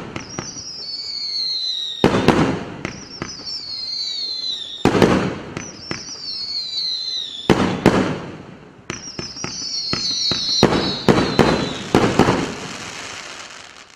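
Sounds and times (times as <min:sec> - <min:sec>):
firework whistles falling in pitch: 0:00.0 - 0:07.9, 0:08.9 - 0:13.9
firework bangs: 0:00.0 - 0:13.9.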